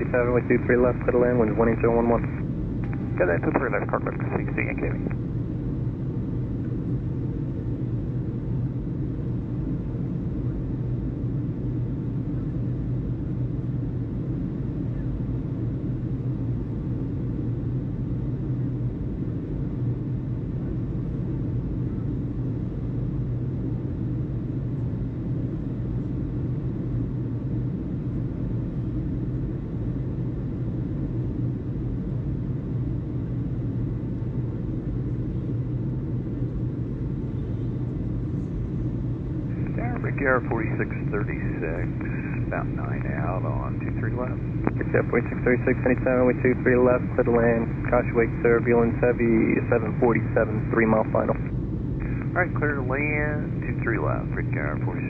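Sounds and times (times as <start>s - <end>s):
low rumble and hum: 0.0s - 55.0s
faint steady tone: 33.0s - 55.0s.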